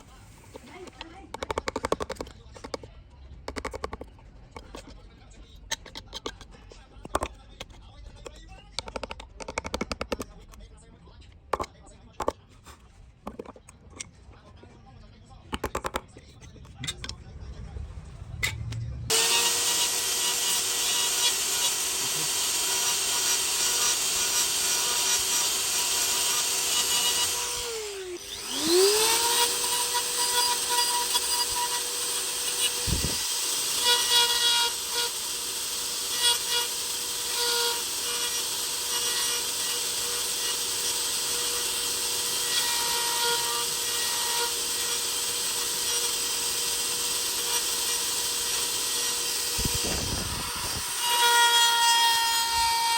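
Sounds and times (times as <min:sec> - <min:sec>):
power tool motor whining: 0:19.1 - 0:52.9
rasp of wood cutting: 0:19.1 - 0:52.9.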